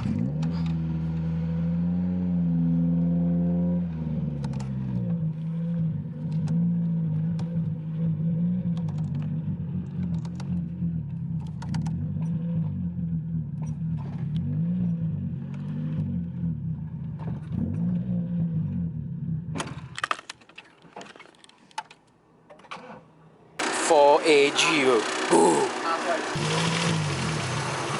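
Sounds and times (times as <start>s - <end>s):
car engine running: 0.0s - 19.6s, 23.6s - 27.9s
clicks and rattles: 19.6s - 22.8s.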